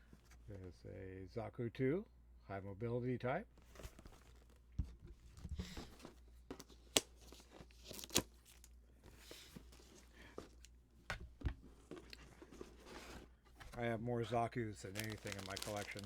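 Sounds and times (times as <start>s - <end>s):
plastic crinkling: 14.8s - 16.0s.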